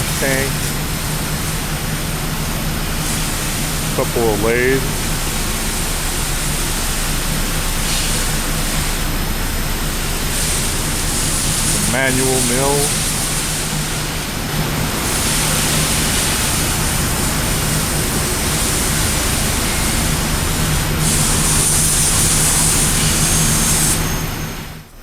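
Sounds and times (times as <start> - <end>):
low machine hum: 0.0 - 25.0
broad hiss: 15.0 - 24.0.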